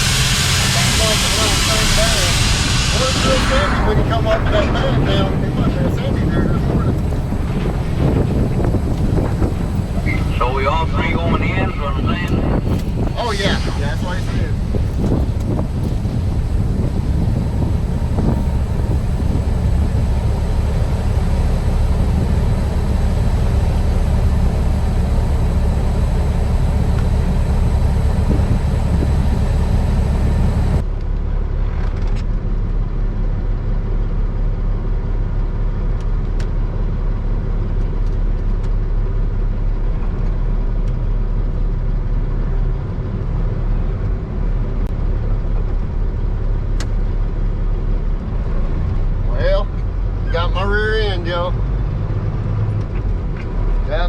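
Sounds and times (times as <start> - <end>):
diesel truck engine running: 0.0 - 31.7.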